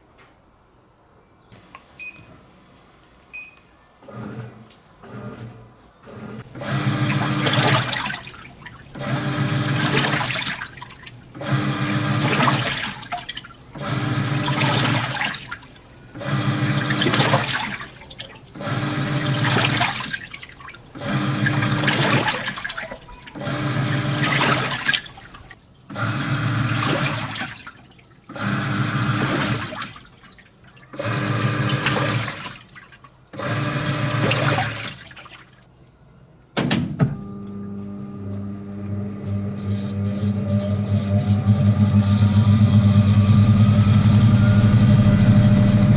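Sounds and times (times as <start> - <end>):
washing machine motor humming: 4.1 - 35.6, 36.7 - 45.9
water churning: 6.2 - 35.7, 39.6 - 45.9.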